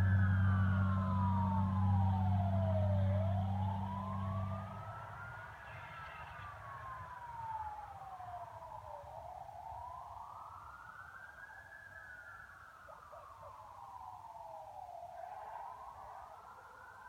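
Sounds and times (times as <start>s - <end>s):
loud low steady drone: 0.0s - 5.0s
fire engine siren wailing: 0.0s - 17.0s.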